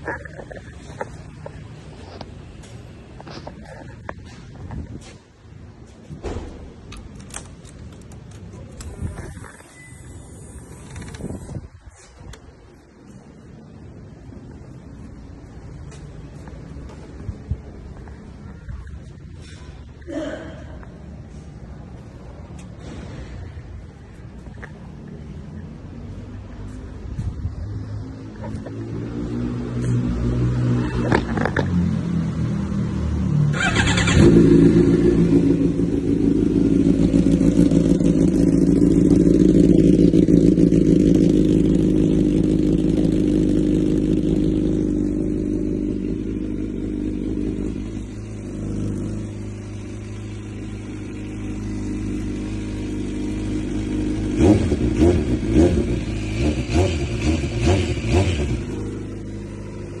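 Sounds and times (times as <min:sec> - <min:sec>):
motorcycle engine revving: 0:28.5 - 1:00.0.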